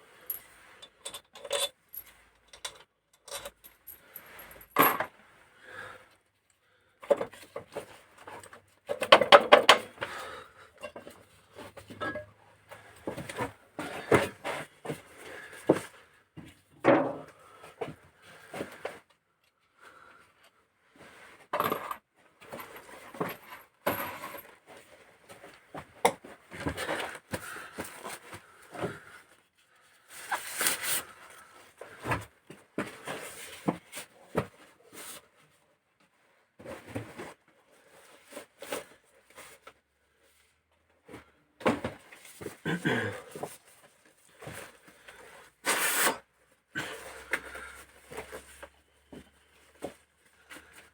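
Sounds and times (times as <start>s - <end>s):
metal tools and parts clinking: 0.3s - 5.1s.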